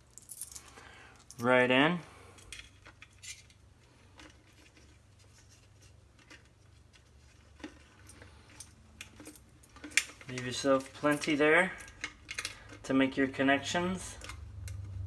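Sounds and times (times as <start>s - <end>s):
small parts clicking and tapping: 4.2s - 12.8s.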